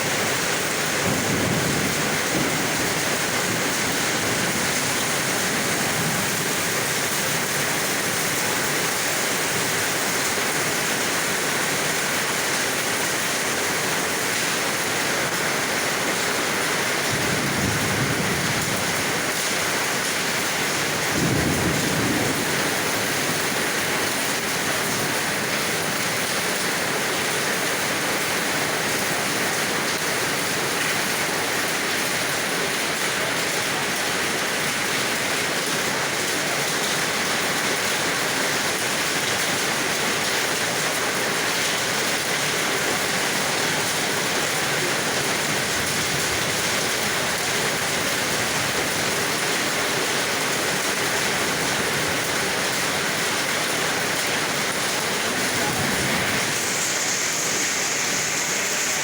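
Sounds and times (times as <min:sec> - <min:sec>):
heavy rain pouring: 0:00.0 - 0:59.0
low rumbles of thunder: 0:00.6 - 0:07.6, 0:17.0 - 0:19.2, 0:20.6 - 0:24.1.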